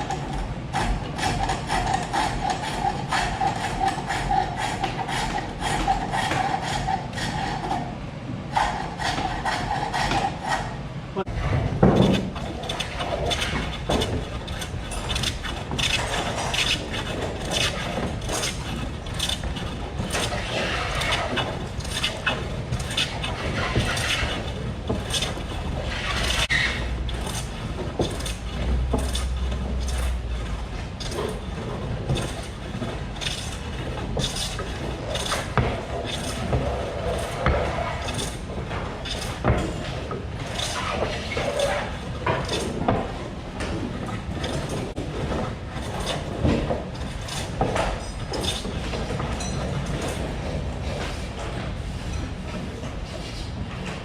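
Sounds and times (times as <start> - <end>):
lathe rattling: 11.4 - 51.3.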